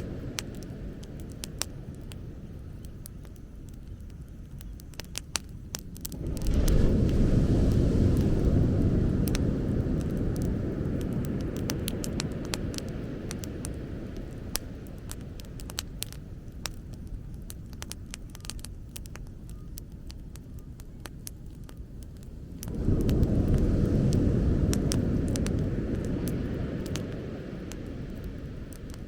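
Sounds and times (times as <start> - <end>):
bonfire crackling and popping: 0.0 - 29.0
low rumble: 0.0 - 29.0.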